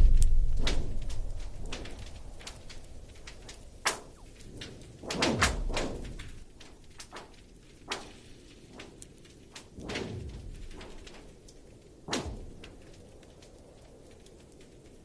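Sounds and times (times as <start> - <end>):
low boom: 0.0 - 2.6.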